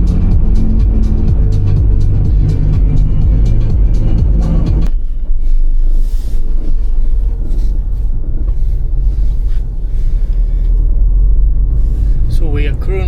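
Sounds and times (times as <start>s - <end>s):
background music: 0.0s - 4.9s
road rumble inside van: 0.0s - 13.0s.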